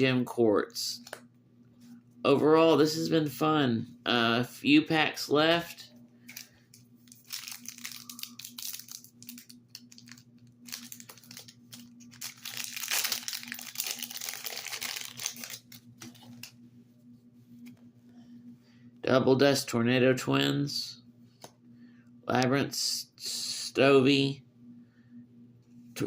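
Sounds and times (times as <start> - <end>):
foil wrapper crinkling and tearing: 6.3 - 16.5.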